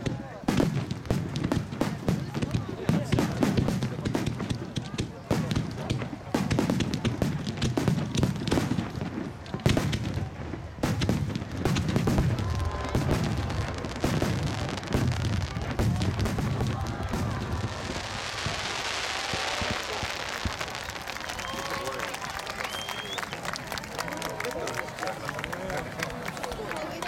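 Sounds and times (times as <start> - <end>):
fireworks bursting: 0.0 - 23.7
crowd applause: 12.2 - 27.0.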